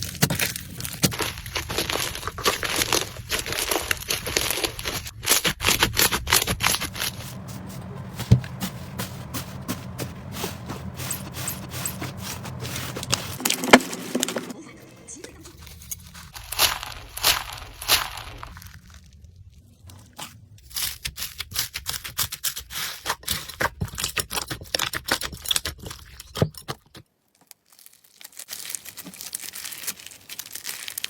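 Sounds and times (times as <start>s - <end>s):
slime crackling and popping: 0.0s - 7.2s, 16.3s - 19.2s, 27.3s - 31.0s
steady low hum: 5.8s - 19.5s.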